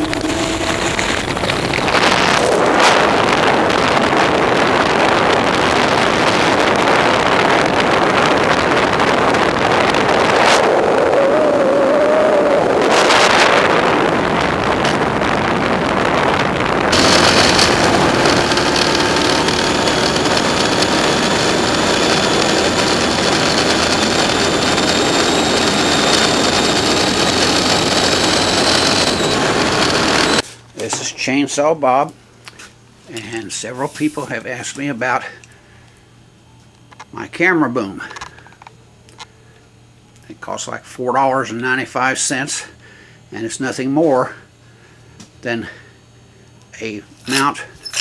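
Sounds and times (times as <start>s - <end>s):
motorcycle engine running: 0.0s - 9.4s, 16.9s - 30.5s
wind rushing over microphone: 0.0s - 30.4s
steady whines: 0.0s - 48.0s.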